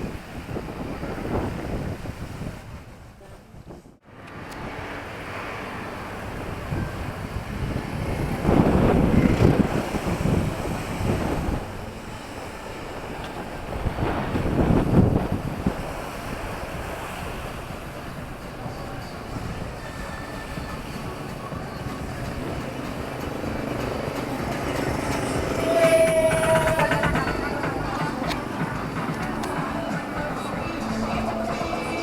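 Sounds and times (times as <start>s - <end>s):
wind buffeting microphone: 0.0s - 32.0s
vehicles passing close: 4.0s - 11.9s
traffic rumble: 4.0s - 32.0s.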